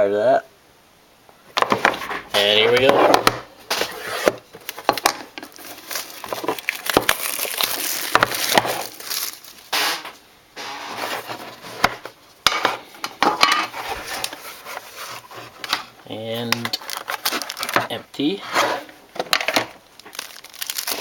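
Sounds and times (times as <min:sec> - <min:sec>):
wrapper and cardboard crinkling: 0:01.7 - 0:10.1, 0:13.6 - 0:21.0.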